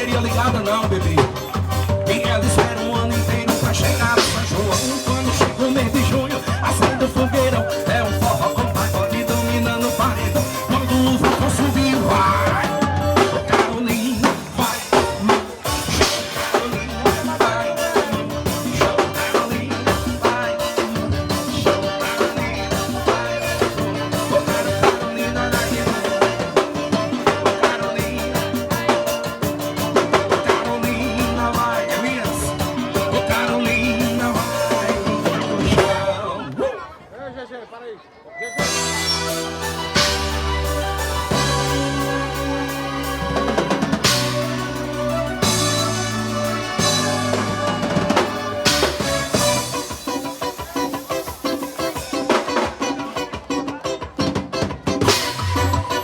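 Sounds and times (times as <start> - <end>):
drum kit steady beat: 0.0 - 36.3, 38.6 - 56.0
band music: 0.0 - 36.6, 38.4 - 56.0.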